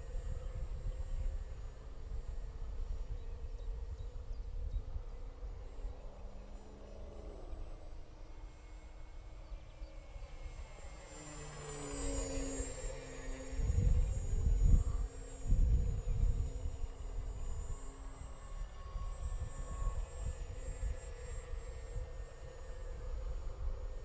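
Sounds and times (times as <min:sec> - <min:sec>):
simulated aircraft engine drone: 0:00.0 - 0:24.0.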